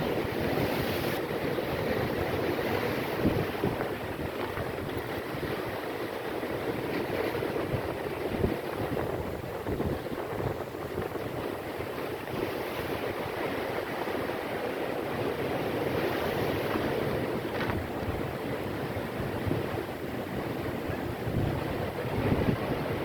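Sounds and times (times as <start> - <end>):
storm waves crashing: 0.0 - 23.0
wind buffeting microphone: 0.0 - 23.0.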